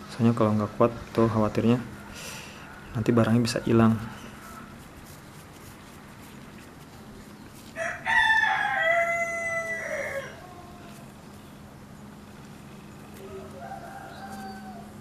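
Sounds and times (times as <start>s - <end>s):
steady low hum: 0.0s - 15.0s
rooster crowing: 1.9s - 4.8s, 7.8s - 11.0s, 13.2s - 15.0s.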